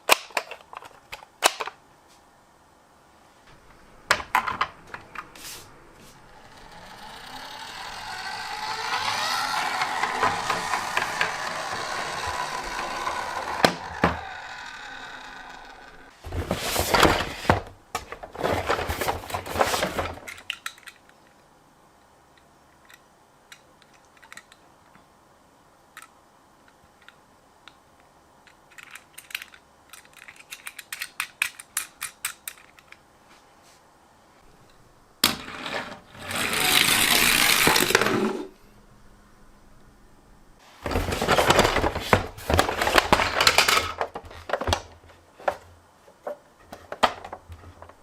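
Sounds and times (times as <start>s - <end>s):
plastic toy vehicles rattling: 6.2s - 21.0s, 28.5s - 33.0s, 36.2s - 38.5s, 40.8s - 45.6s
toy car electronic sound effect: 6.3s - 16.1s.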